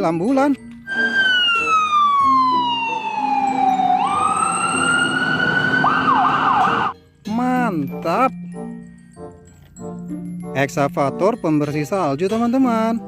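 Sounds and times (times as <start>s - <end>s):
ambulance siren wailing and yelping: 0.8s - 7.0s.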